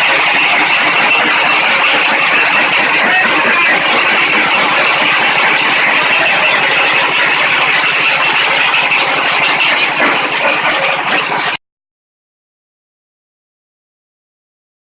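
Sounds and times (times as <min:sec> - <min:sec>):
stone-crushing machine clatter: 0:00.0 - 0:11.6.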